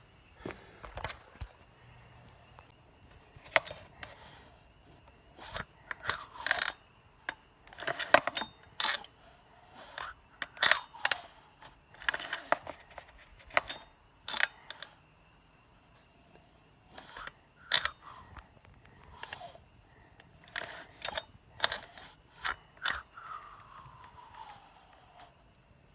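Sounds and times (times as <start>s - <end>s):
chainsaw starter rope pulls: 16.9s - 25.3s.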